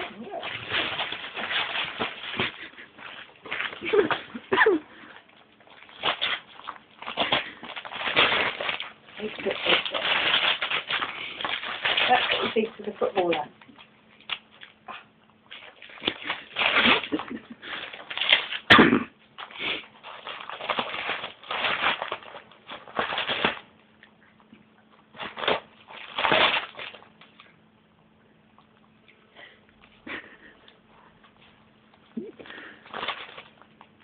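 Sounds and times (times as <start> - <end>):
paper tearing and rustling: 0.0 - 4.8, 5.6 - 13.5, 15.5 - 18.8, 19.4 - 23.7, 25.1 - 27.4, 32.5 - 34.0.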